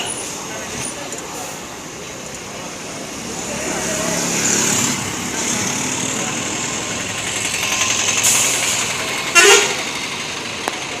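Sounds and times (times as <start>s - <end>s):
vehicle horn toot: 9.3s - 9.8s.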